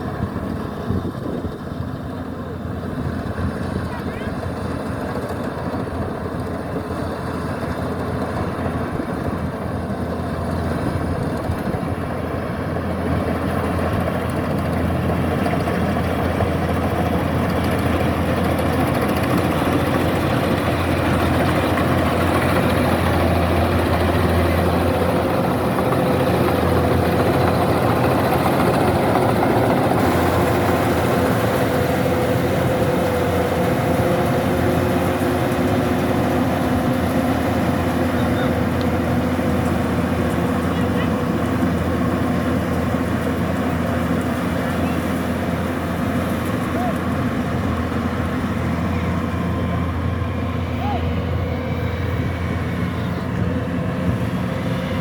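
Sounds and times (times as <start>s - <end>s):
combine harvester running: 0.0s - 55.0s.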